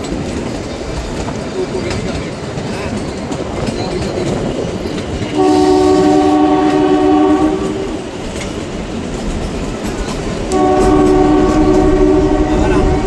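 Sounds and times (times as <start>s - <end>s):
train wheels clattering on rail: 0.0s - 13.0s
train horn chord: 5.3s - 8.0s, 10.5s - 13.0s.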